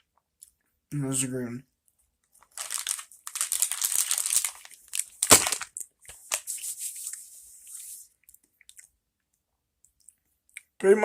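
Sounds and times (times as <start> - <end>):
sharp plastic crackle: 2.4 - 6.5
plastic bag crinkling: 2.4 - 6.6.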